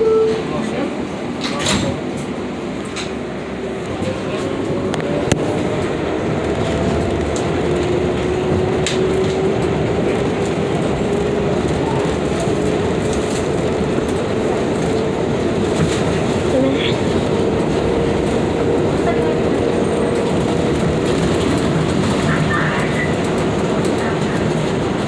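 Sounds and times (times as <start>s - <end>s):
wheels rumbling on rail: 0.0s - 25.0s.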